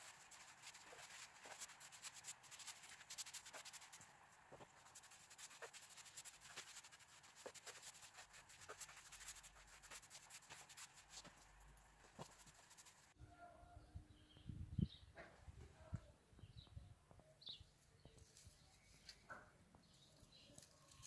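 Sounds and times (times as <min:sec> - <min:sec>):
rubbing and scratching on wood: 0:00.0 - 0:13.1
bird chirping: 0:16.4 - 0:21.0.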